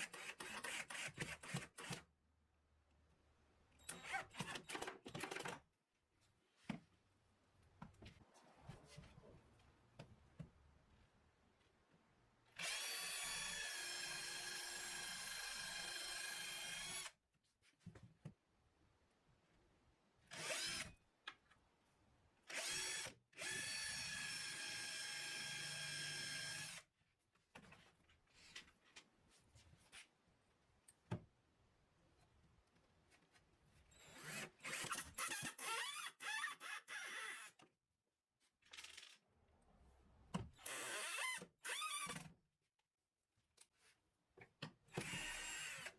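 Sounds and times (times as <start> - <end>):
power drill running: 12.6 - 17.1, 20.3 - 20.8, 22.5 - 26.8, 45.0 - 45.9.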